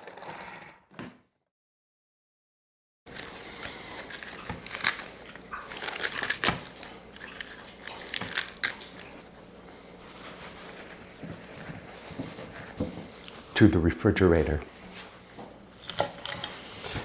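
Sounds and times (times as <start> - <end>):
crinkling and rustling: 3.1 - 13.6.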